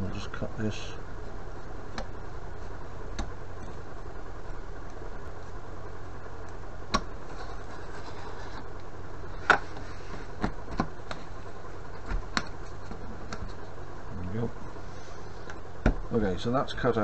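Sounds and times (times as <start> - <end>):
steady low hum: 0.0 - 17.0
knife scraping foam: 7.3 - 8.7.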